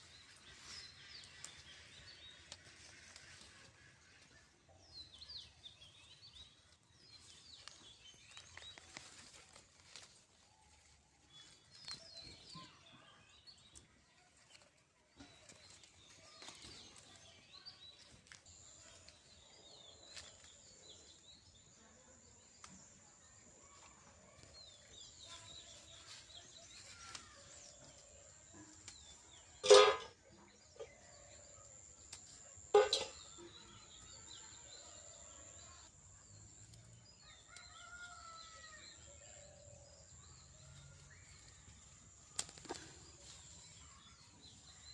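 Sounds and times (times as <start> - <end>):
small birds chirping: 22.4 - 44.9.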